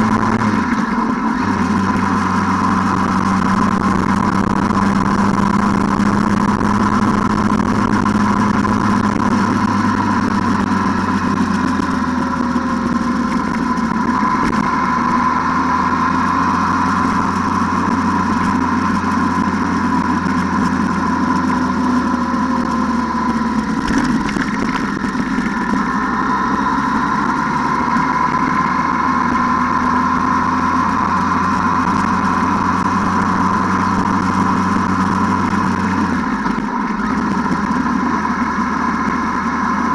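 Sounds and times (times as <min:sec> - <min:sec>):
atv engine running steadily: 0:00.0 - 0:39.9.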